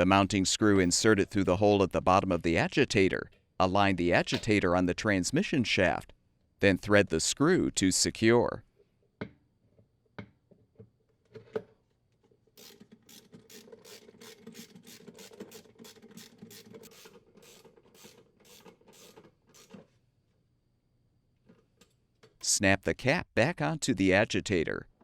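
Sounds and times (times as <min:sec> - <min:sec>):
hand tool ratcheting and scraping: 0:12.6 - 0:19.9.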